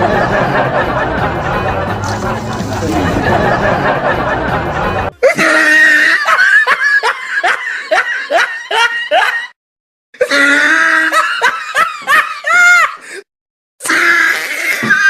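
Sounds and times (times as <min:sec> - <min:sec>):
high-pitched laughter: 0:02.0 - 0:09.6.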